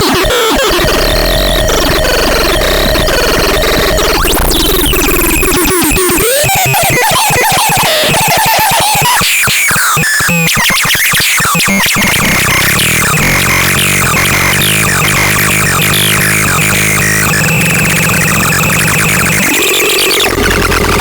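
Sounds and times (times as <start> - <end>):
synthesizer harsh electronic tones: 0.0 - 21.0
low synth buzz: 12.1 - 19.6.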